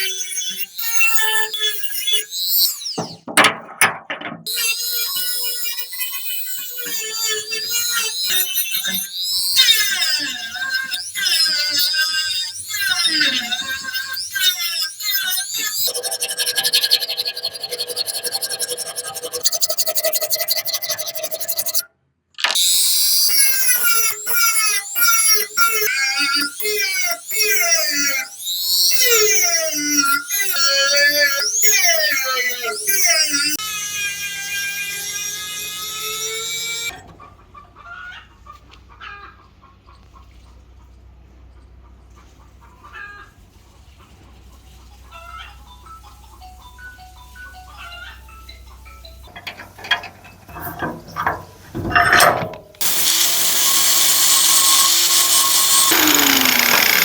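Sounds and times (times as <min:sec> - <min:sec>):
hand tool scraping metal: 0:15.3 - 0:21.8, 0:49.3 - 0:57.0
chickens clucking: 0:37.0 - 0:51.7
loud high-pitched tone: 0:52.8 - 0:57.0.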